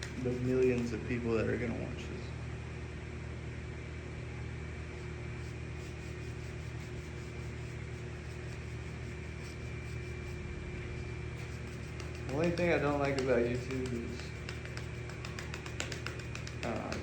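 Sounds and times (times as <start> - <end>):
mechanical hum: 0.0 - 17.0
thin high whine: 5.0 - 16.9.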